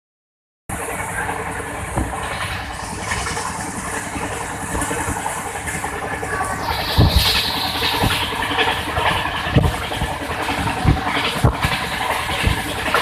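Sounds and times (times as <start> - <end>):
train wheels rattling on rails: 0.7 - 13.0
loud thump: 6.9 - 7.3.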